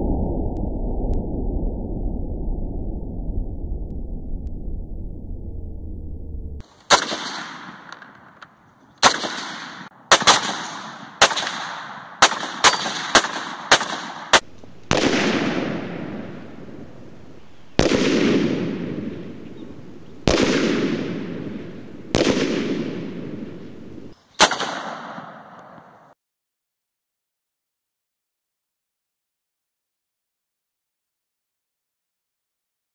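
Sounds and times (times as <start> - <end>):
rifle shots cracking: 6.6 - 26.1
loud echoing rifle reports: 6.8 - 26.2.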